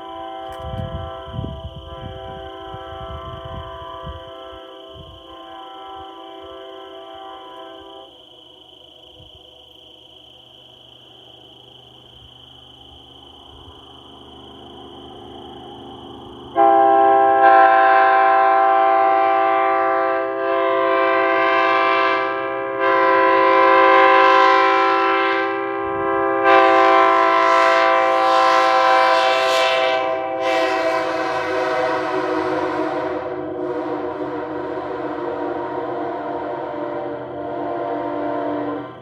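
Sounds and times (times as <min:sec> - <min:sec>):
locomotive air horn blasts: 0:00.0 - 0:08.2, 0:16.3 - 0:39.0.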